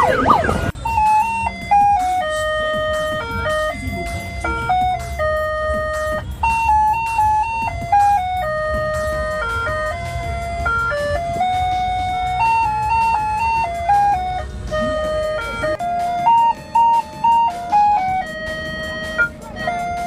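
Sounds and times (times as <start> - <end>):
steady low rumble: 0.0 - 12.9
ice cream van chimes: 0.0 - 20.0.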